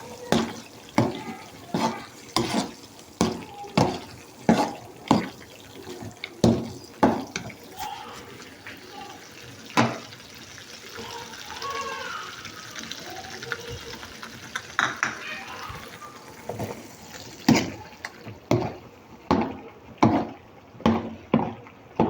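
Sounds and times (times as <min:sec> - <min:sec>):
metal utensil striking pot: 0:00.3 - 0:07.9.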